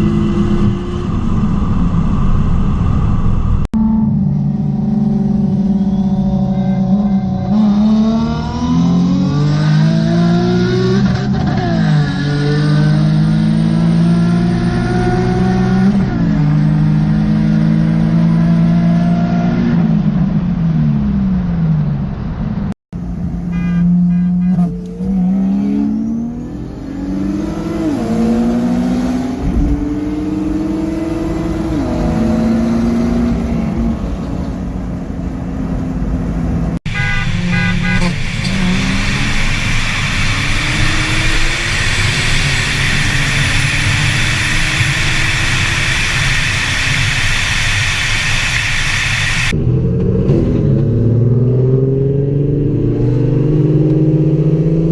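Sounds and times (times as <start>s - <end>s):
car engine revving through gears: 4.6s - 20.0s, 23.8s - 47.6s, 48.2s - 54.9s
turbo whistle: 5.2s - 7.9s, 36.9s - 39.3s.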